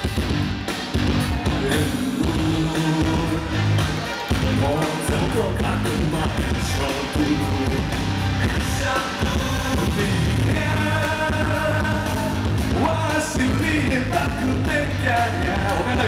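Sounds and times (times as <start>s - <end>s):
live rock band playing: 0.0s - 16.0s
person singing: 1.3s - 16.0s.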